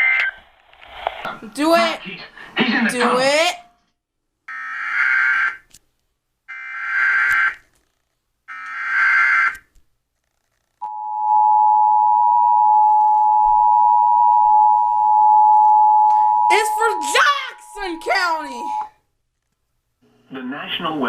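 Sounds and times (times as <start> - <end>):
steady attention tone: 10.8 - 19.0.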